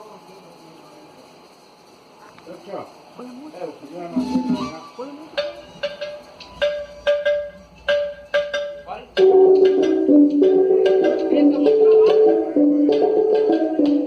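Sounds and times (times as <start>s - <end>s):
ringing percussive hits: 4.0s - 14.0s
music over sound system: 4.1s - 14.0s.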